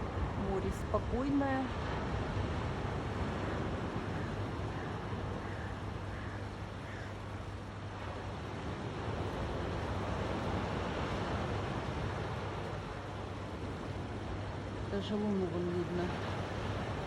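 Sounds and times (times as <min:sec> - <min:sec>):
sea washing at shore: 0:00.0 - 0:17.0.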